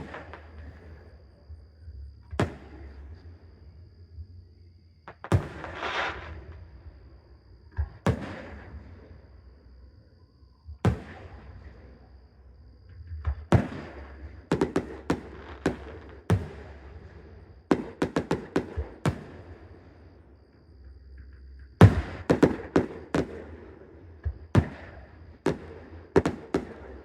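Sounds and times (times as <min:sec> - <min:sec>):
firework shells bursting: 0:17.7 - 0:19.2.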